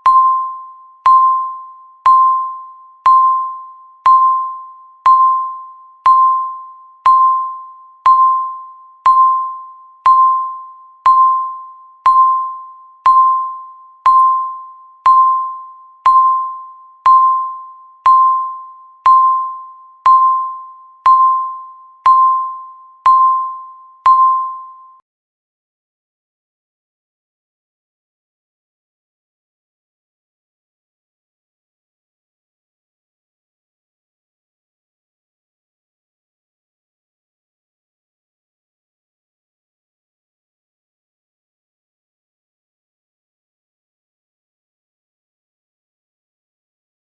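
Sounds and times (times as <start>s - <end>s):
electronic timer beeps: 0.0s - 25.0s.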